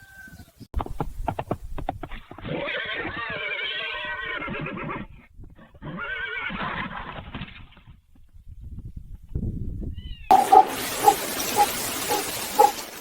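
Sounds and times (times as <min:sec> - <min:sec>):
animal quavering calls: 0:10.3 - 0:12.8.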